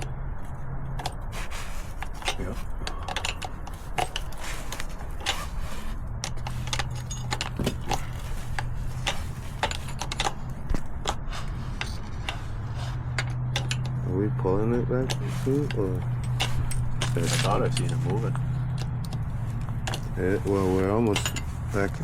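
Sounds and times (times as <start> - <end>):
low steady hum: 0.0 - 22.0
hand tools clinking on metal: 1.0 - 22.0.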